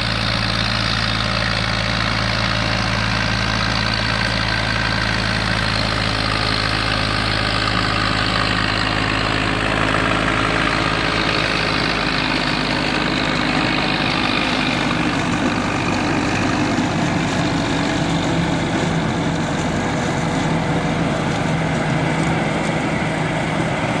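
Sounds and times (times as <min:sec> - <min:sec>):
diesel tractor engine running: 0:00.0 - 0:24.0
machinery noise: 0:00.5 - 0:24.0.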